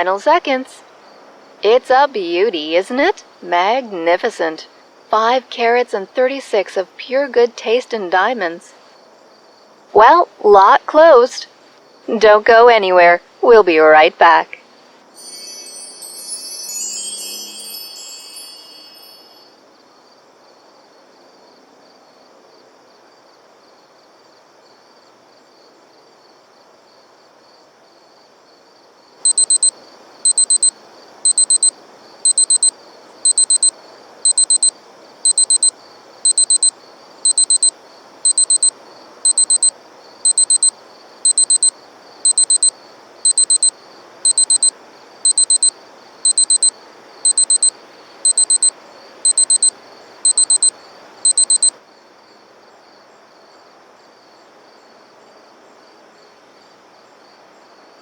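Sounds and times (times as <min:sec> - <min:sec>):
faint steady hiss: 0:00.0 - 0:58.0
bright chime: 0:15.2 - 0:19.6
alarm clock beeping: 0:29.2 - 0:51.8.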